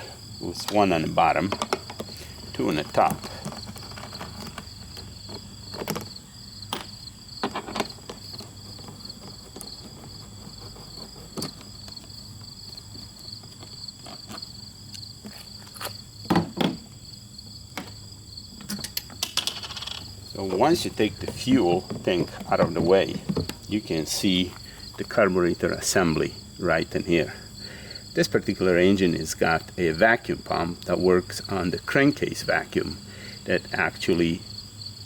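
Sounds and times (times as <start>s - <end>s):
hand tools clicking and knocking: 0.0s - 12.2s, 18.6s - 23.8s
crickets chirping: 0.0s - 35.0s.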